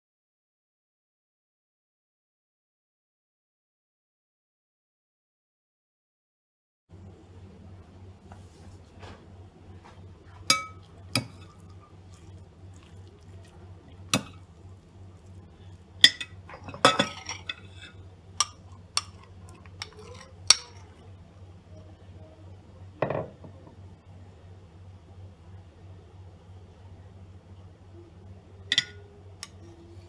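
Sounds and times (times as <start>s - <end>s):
kitchenware clatter: 10.4s - 13.0s, 14.1s - 14.4s, 16.0s - 21.0s, 23.0s - 23.6s, 28.7s - 29.7s
glass and kitchenware clinking: 10.4s - 13.4s, 14.2s - 14.4s, 16.0s - 20.9s, 28.7s - 29.6s.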